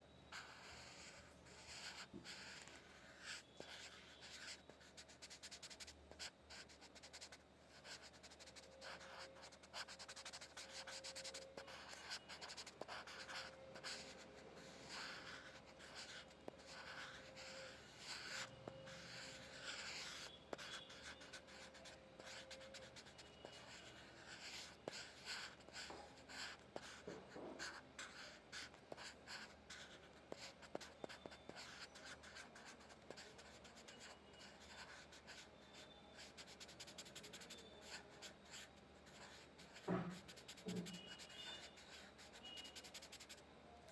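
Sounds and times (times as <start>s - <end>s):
pencil scratching on paper: 0.3s - 43.4s.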